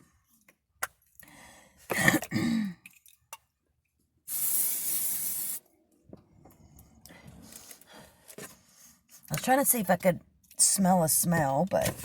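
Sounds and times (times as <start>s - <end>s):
person coughing: 1.9s - 2.8s
aerosol can spraying: 4.3s - 5.6s.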